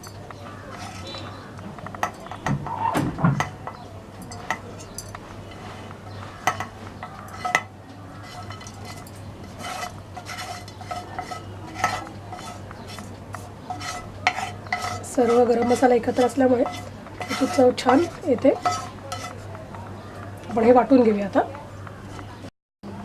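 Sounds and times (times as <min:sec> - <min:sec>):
metal spoon clinking on steel: 0:00.0 - 0:01.3, 0:03.4 - 0:05.6, 0:06.5 - 0:19.4.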